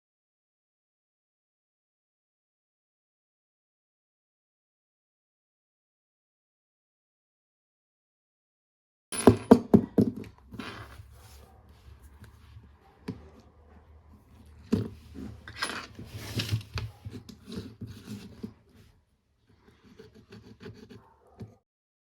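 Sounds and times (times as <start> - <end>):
scraping on work surface: 10.1 - 21.6.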